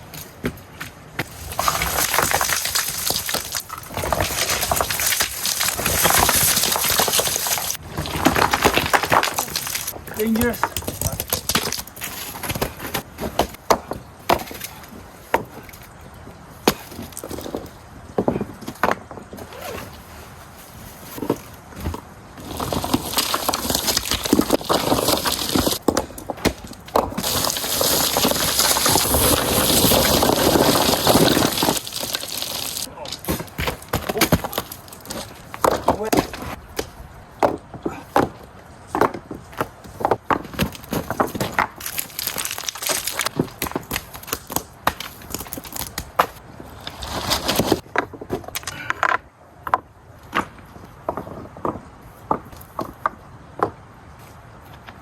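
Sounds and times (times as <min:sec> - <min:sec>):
camping gear knocks and scrapes: 0:16.6 - 0:41.8.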